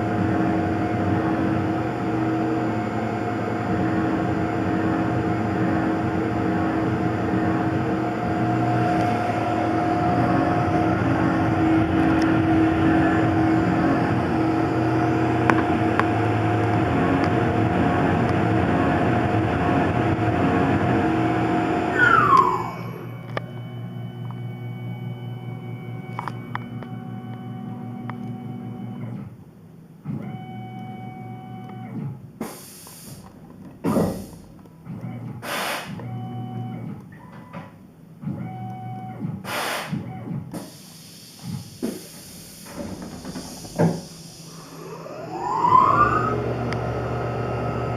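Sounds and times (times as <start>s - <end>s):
falling whine: 0.0s - 25.7s, 42.7s - 47.9s
machine motors humming: 0.0s - 29.3s, 41.4s - 47.9s
short bursts of hiss: 32.4s - 33.2s, 35.4s - 36.0s, 39.4s - 40.0s
mill cutting aluminium: 44.3s - 47.9s.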